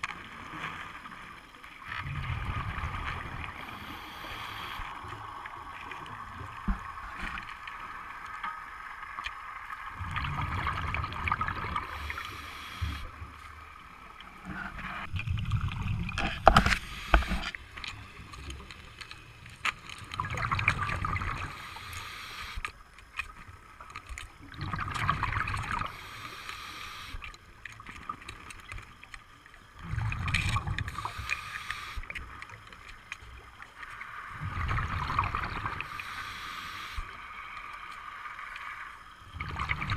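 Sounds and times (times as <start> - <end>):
exhaled bubbles rumbling underwater: 0.0 - 22.1, 22.8 - 39.9
regulator hissing: 35.8 - 37.2.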